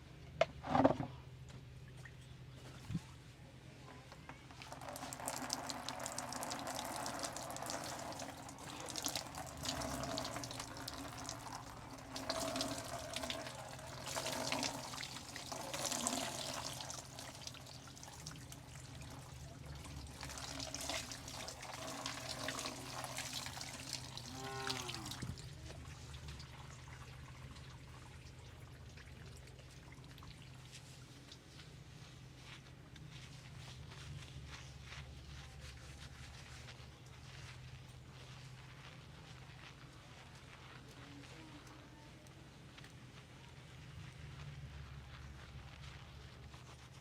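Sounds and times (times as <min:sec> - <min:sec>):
water splashing: 0:04.6 - 0:31.4
wet hands rubbing hair: 0:30.5 - 0:41.9, 0:42.6 - 0:47.0.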